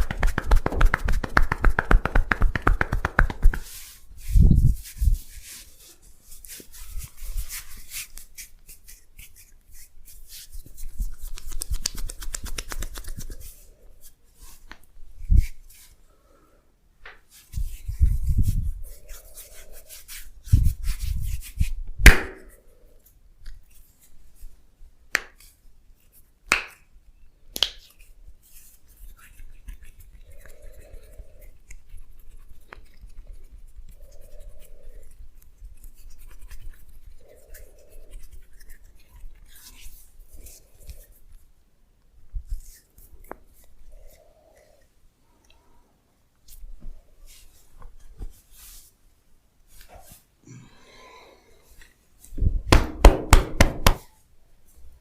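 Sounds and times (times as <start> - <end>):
dull pats on skin: 0.0 - 15.9, 17.0 - 22.6, 46.4 - 48.9, 52.2 - 54.2
hands rubbing skin and hair: 0.0 - 16.0, 17.0 - 26.9, 27.5 - 41.5, 42.2 - 44.9, 46.4 - 50.4, 51.7 - 55.0.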